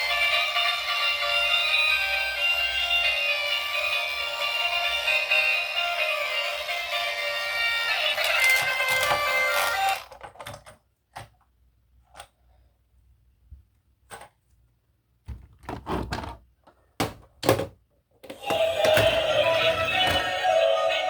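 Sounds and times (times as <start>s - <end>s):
toys clicking and knocking: 7.9s - 12.4s, 16.6s - 20.6s.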